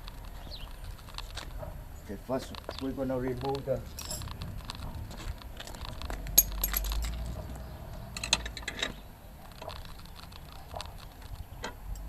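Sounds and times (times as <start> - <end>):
low handling rumble: 0.0 - 12.0
metal hardware clinking: 3.9 - 4.5, 5.9 - 7.3.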